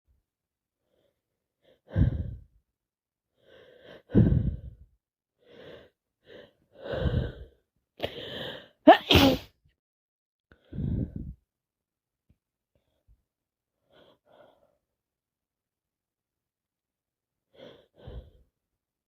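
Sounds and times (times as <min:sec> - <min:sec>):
gasping in-breaths: 0:00.9 - 0:02.5, 0:03.4 - 0:08.8, 0:10.6 - 0:11.4, 0:17.5 - 0:18.4
woman sneezing: 0:08.9 - 0:09.6.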